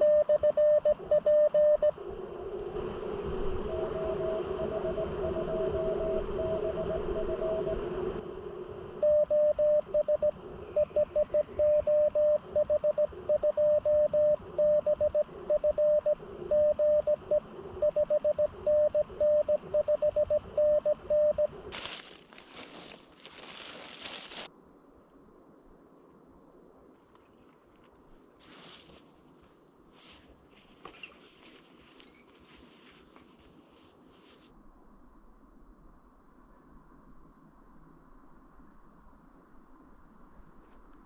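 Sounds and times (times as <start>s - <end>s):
loud morse code tone: 0.0s - 1.9s, 9.0s - 21.6s
weak morse code beeps: 0.0s - 1.9s, 9.0s - 21.6s
radio hiss and band noise: 2.6s - 24.5s.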